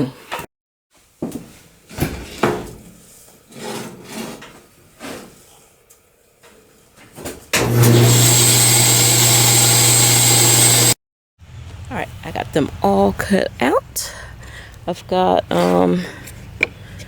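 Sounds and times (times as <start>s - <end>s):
bandsaw running: 7.6s - 11.0s.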